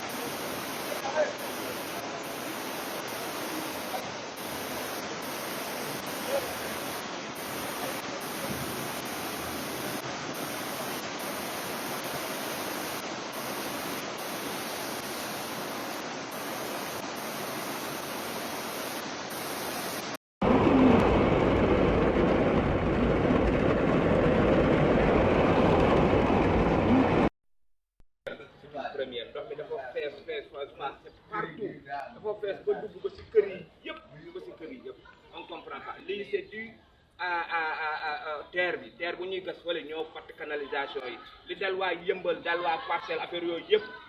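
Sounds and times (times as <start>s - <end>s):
water rushing: 0.0s - 20.2s
deep rushing noise: 20.4s - 27.3s.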